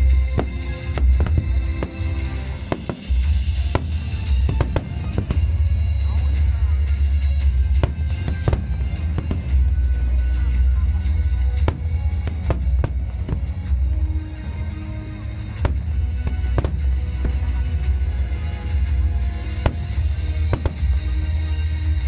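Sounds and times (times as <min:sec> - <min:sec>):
loud music: 0:00.0 - 0:22.0
fireworks bursting in bangs: 0:00.2 - 0:06.0, 0:07.6 - 0:10.3, 0:11.2 - 0:14.2, 0:15.4 - 0:18.0, 0:19.4 - 0:22.0.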